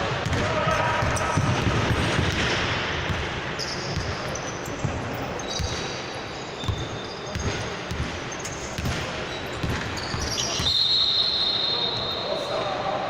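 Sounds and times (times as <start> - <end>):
basketball bouncing on court: 0.0 - 6.0, 6.6 - 10.8
short high squeaks: 9.3 - 12.5.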